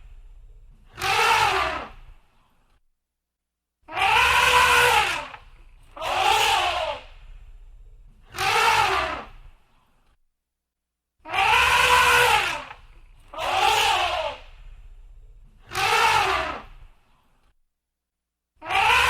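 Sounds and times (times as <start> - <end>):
low rumble: 0.0 - 0.9, 7.0 - 8.3, 14.4 - 15.6
elephant trumpeting: 0.7 - 2.1, 3.9 - 9.5, 11.3 - 16.8, 18.6 - 19.0.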